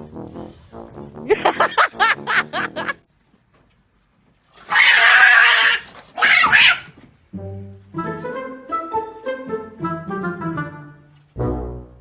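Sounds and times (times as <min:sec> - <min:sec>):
music: 0:00.0 - 0:01.3, 0:07.3 - 0:12.0.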